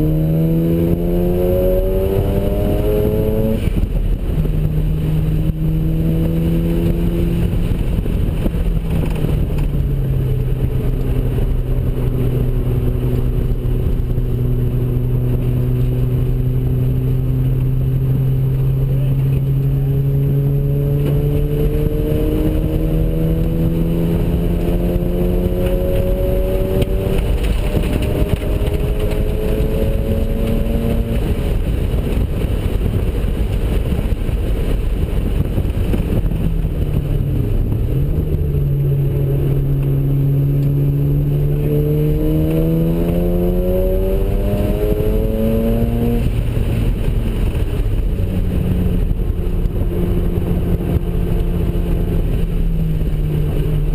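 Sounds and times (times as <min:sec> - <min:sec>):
rotary engine revving: 0:00.0 - 0:04.1, 0:18.6 - 0:32.3, 0:34.6 - 0:53.9
road noise: 0:00.0 - 0:53.9.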